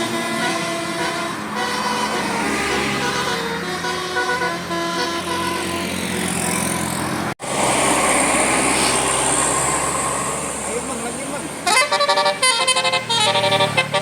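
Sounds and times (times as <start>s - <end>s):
bus horn playing a tune: 0.0s - 6.9s, 11.6s - 14.0s.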